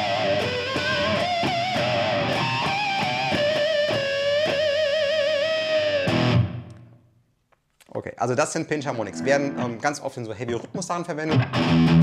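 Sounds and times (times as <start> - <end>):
distorted electric guitar squeals: 9.0 - 9.8.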